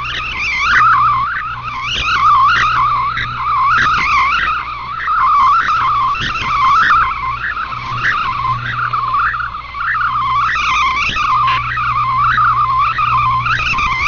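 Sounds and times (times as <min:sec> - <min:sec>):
low steady hum: 0:00.0 - 0:14.0
radio band noise: 0:00.0 - 0:14.0
warbling data tones: 0:00.0 - 0:14.0.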